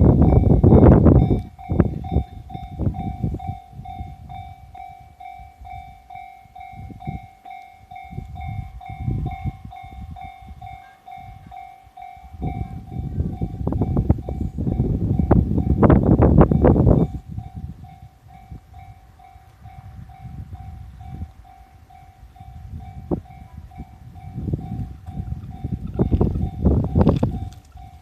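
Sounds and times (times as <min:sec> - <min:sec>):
electric train rumbling: 0:00.0 - 0:28.0
level crossing warning bell: 0:00.0 - 0:28.0.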